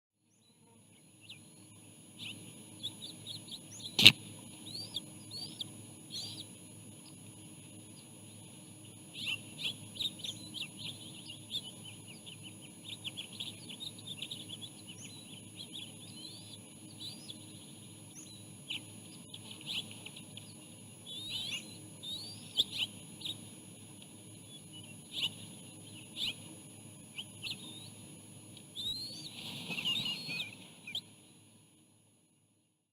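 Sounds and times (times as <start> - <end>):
high bird chirps: 28.8 - 31.1.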